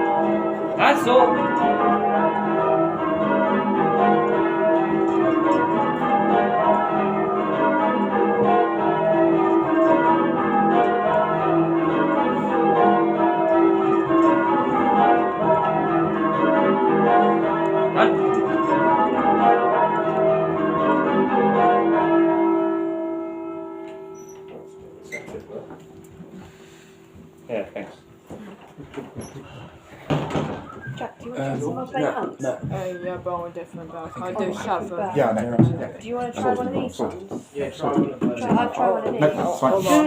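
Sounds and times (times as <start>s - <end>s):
bells humming: 0.0s - 27.4s
church bells ringing: 0.0s - 27.4s, 34.0s - 35.5s, 36.1s - 37.1s, 37.7s - 40.0s.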